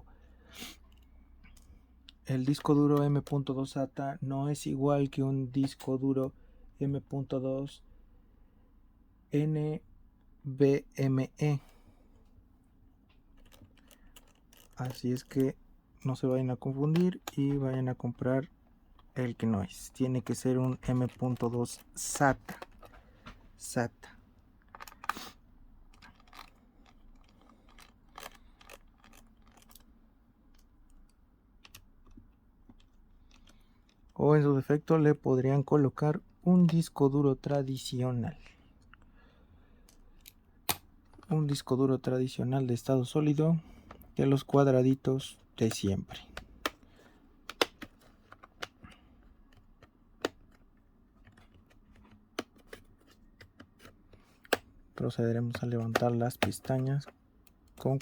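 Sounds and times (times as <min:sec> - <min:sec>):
clicks on laptop plastic case: 0:45.7 - 0:48.9, 0:49.5 - 0:57.1.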